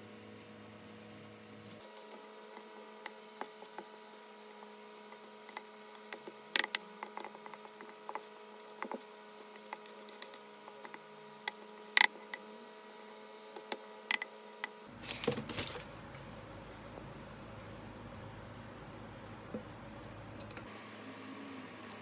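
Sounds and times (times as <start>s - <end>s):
faint electrical hum: 0.0s - 22.0s
kitchen utensils clicking and tapping: 13.7s - 15.4s.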